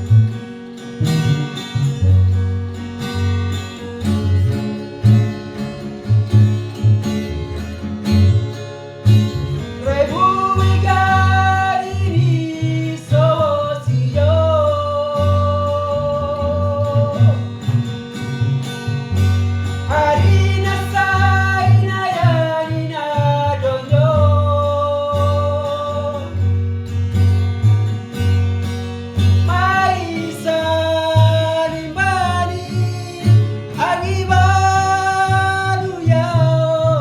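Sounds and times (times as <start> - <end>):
guitar-led band: 0.0 - 37.0
person singing: 9.8 - 17.5, 19.9 - 26.4, 29.4 - 37.0.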